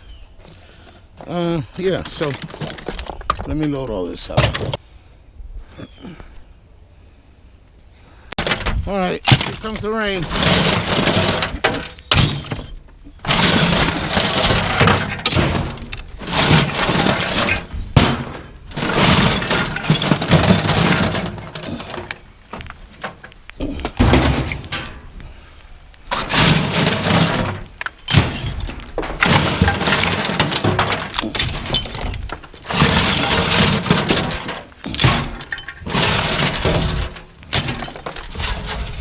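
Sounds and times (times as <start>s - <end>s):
metal hand tools clattering: 1.8s - 3.8s, 8.4s - 22.2s, 26.1s - 39.0s.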